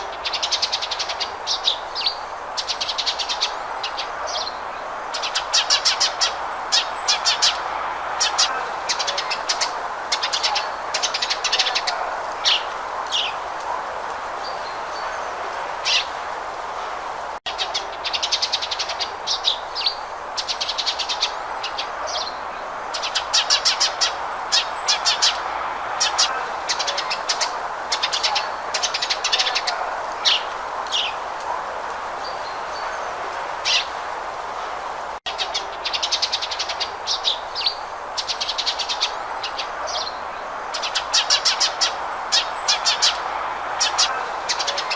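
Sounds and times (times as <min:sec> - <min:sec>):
steady background hiss: 0:00.0 - 0:44.9.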